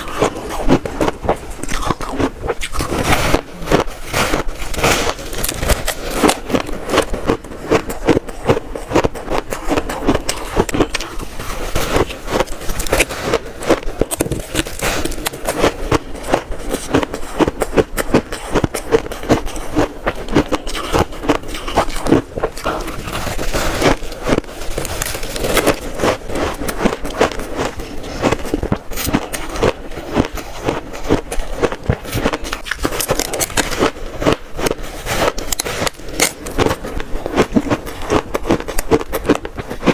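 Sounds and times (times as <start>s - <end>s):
chewing shaved ice: 0.0s - 39.9s.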